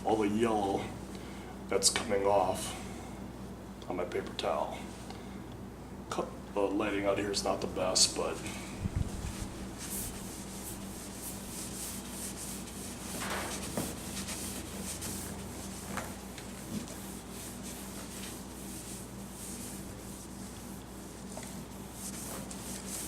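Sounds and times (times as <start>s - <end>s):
paper towel rubbing plastic: 8.2s - 23.0s.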